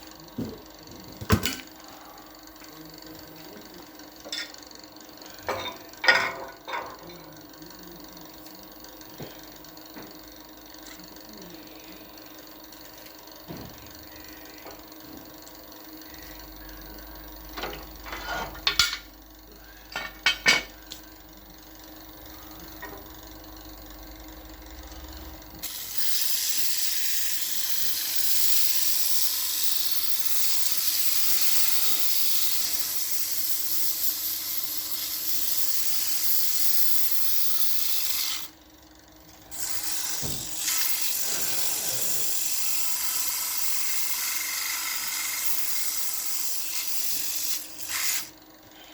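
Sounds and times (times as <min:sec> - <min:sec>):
sandpaper sanding spinning wood: 0:39.6 - 0:48.3.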